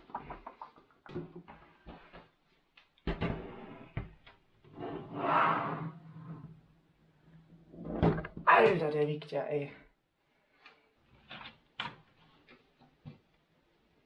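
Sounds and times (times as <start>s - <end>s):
rubbing scrape: 4.8s - 6.4s.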